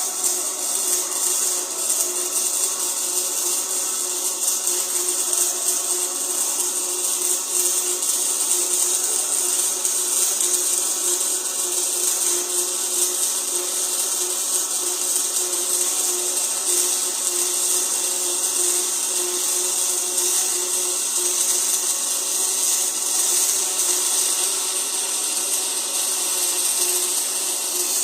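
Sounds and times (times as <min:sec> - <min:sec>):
welding arc hissing: 0:00.0 - 0:28.0.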